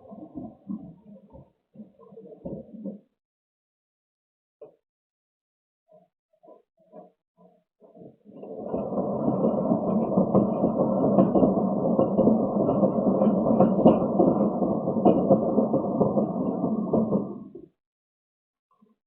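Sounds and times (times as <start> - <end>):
cat wheel rolling rumble: 8.0 - 17.7.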